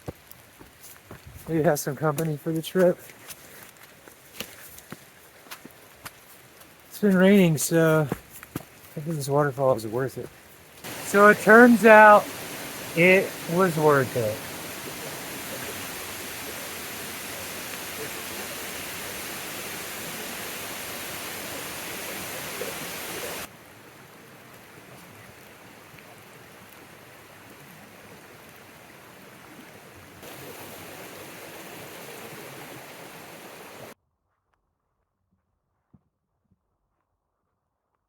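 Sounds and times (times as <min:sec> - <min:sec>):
waterfall rushing: 0:10.8 - 0:23.5, 0:30.2 - 0:34.0.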